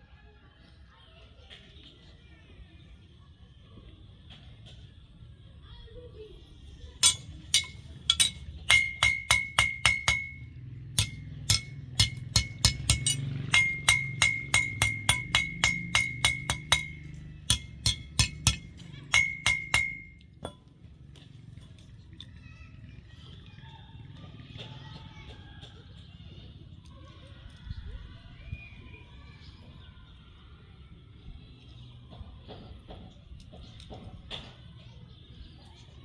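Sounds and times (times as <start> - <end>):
hammer striking steel: 7.0 - 20.7.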